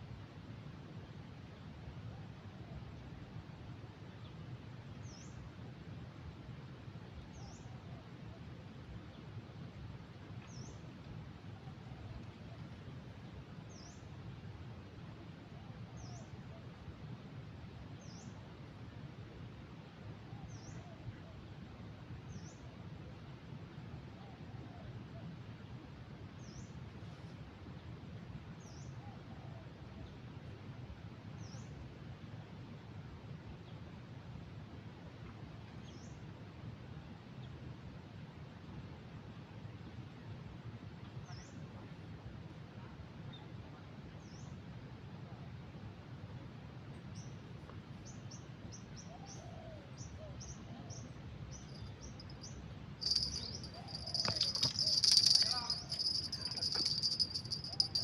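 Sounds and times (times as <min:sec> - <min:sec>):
outdoor noise haze: 0:00.0 - 0:58.0
bird chirping: 0:51.5 - 0:58.0
shrill steady sound with clicking: 0:53.0 - 0:58.0.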